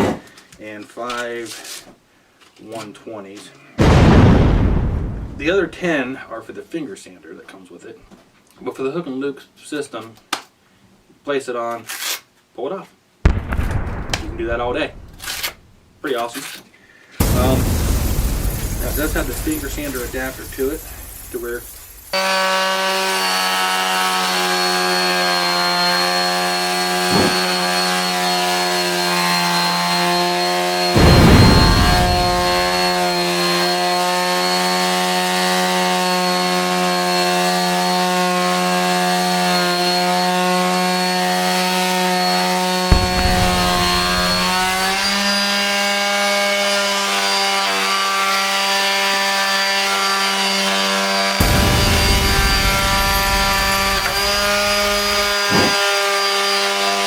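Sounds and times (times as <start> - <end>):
detail sander buzzing: 22.1 - 31.0, 51.4 - 56.6.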